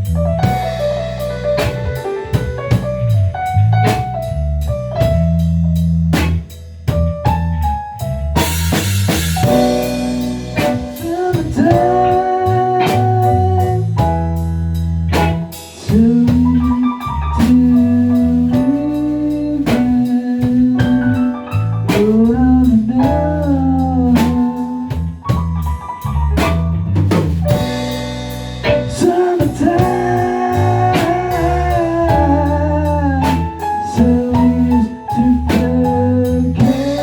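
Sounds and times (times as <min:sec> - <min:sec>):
bass line: 0:00.0 - 0:37.0
drum kit beat: 0:00.0 - 0:37.0
bending lead guitar melody: 0:25.1 - 0:34.0.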